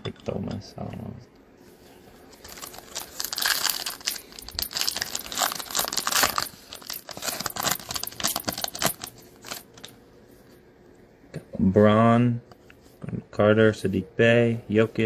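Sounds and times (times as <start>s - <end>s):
foil wrapper tearing and crinkling: 2.5s - 9.6s.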